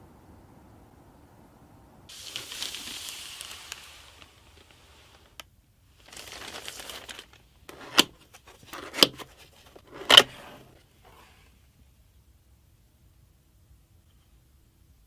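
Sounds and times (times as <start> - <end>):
plastic packaging crinkling: 2.1 - 10.8.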